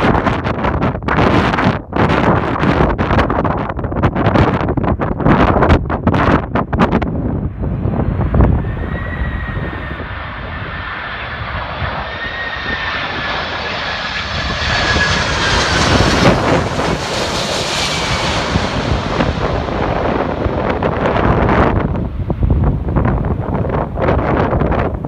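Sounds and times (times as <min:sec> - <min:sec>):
rushing air noise: 0:06.6 - 0:25.0
jet engines whining: 0:07.2 - 0:25.0.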